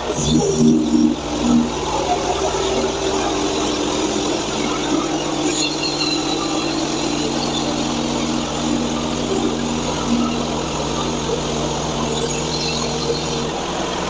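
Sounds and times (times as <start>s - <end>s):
sawmill engine running: 0.0s - 14.0s.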